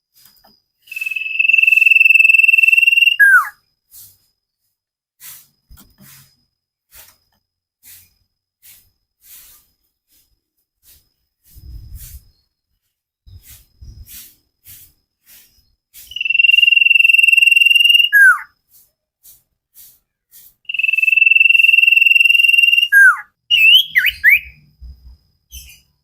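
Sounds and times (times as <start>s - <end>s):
bird whistling: 0.9s - 3.6s, 16.0s - 18.5s, 20.7s - 24.6s.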